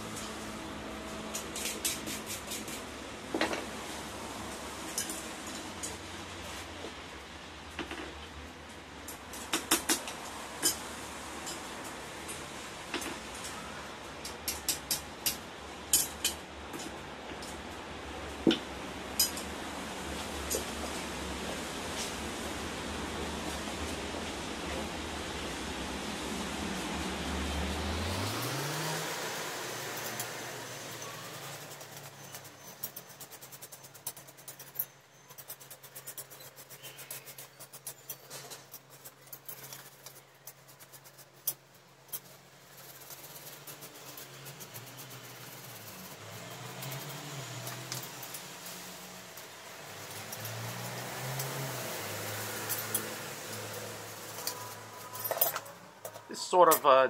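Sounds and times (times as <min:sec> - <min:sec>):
scraping strokes on metal: 0:01.3 - 0:02.9, 0:28.4 - 0:57.0
metal pieces and tools clinking: 0:29.8 - 0:51.6, 0:52.4 - 0:57.0.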